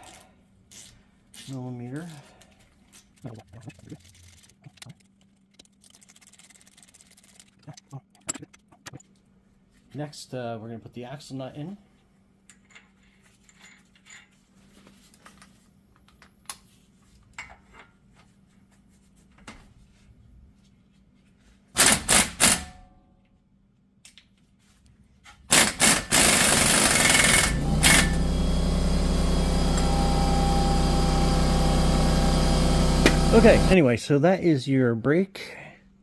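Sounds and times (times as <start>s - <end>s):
impact wrench rattling: 21.8s - 22.7s, 25.5s - 28.3s
loud steady machine sound: 25.5s - 33.8s.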